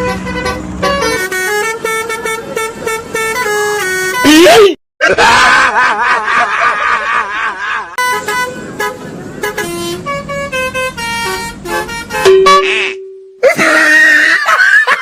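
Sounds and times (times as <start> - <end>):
musical multi-tone bus horn: 0.0 - 4.6, 8.0 - 13.4.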